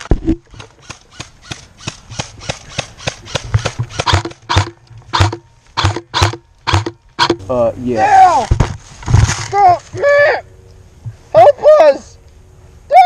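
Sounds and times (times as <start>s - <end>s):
airsoft guns firing: 0.6s - 7.4s.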